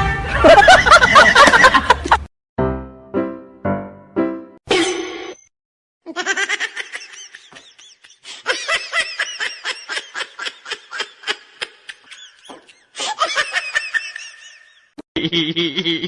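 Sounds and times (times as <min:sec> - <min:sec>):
person laughing hard: 0:00.2 - 0:02.3, 0:06.1 - 0:16.0.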